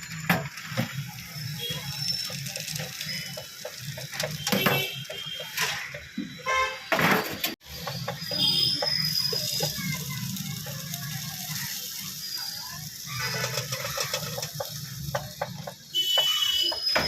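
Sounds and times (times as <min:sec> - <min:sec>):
utensils clicking and clattering: 0:00.0 - 0:06.2, 0:07.0 - 0:17.0
faint voices: 0:08.2 - 0:15.9.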